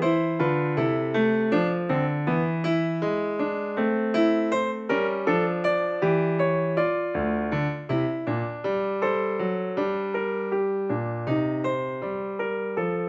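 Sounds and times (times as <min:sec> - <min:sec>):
gentle electric piano tune: 0:00.0 - 0:13.0.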